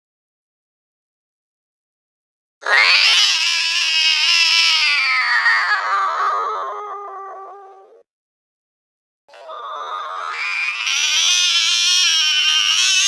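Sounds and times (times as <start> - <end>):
slowed cat yowl: 2.6 - 8.0, 9.3 - 13.0.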